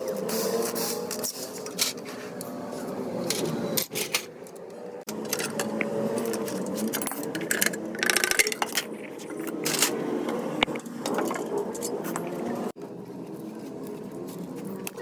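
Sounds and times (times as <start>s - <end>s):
metal tools clinking: 3.3s - 10.0s.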